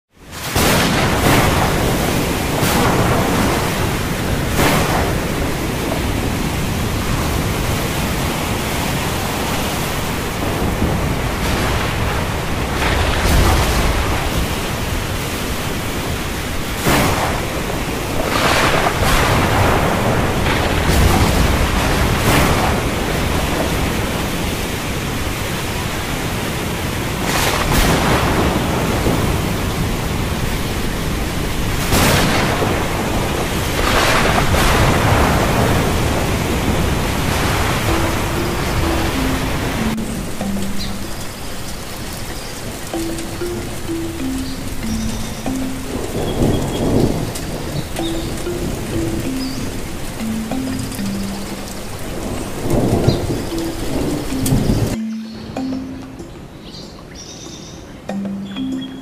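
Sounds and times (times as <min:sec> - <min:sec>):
rain and wind rushing: 0:00.1 - 0:56.8
sharp thunder cracks: 0:00.5 - 0:06.2, 0:10.5 - 0:14.7, 0:16.8 - 0:23.7, 0:31.7 - 0:37.7
deep thunder rumbling: 0:10.4 - 0:15.1, 0:16.8 - 0:24.1.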